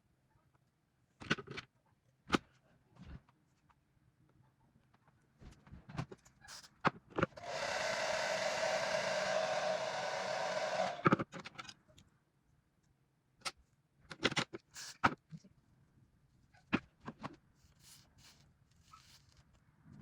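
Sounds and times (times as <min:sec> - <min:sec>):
hair dryer blowing: 0:07.4 - 0:11.1.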